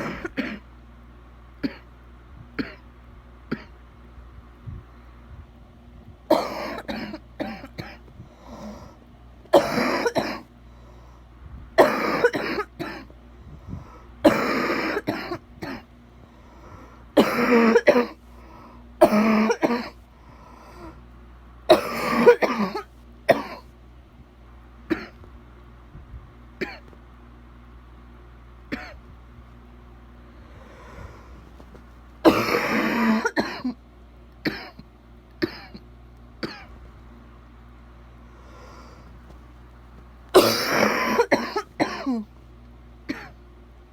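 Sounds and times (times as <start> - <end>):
person coughing wetly: 0.0 - 0.6, 1.6 - 1.9, 2.6 - 2.8, 3.5 - 3.8, 6.3 - 8.8, 9.5 - 10.5, 11.8 - 13.1, 14.2 - 15.9, 17.2 - 18.2, 19.0 - 20.0, 21.7 - 23.7, 24.9 - 25.2, 26.6 - 26.9, 28.7 - 29.0, 32.2 - 33.8, 34.4 - 34.8, 35.4 - 35.8, 36.4 - 36.8, 40.4 - 42.3, 43.1 - 43.4.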